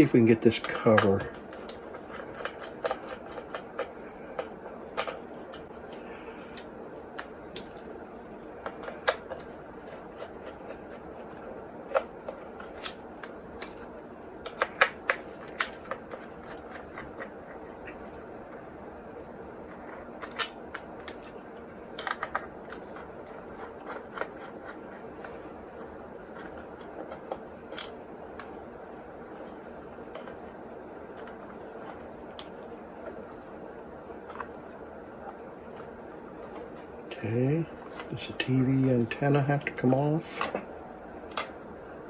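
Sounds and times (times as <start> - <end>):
faint steady hum: 0.0 - 42.0.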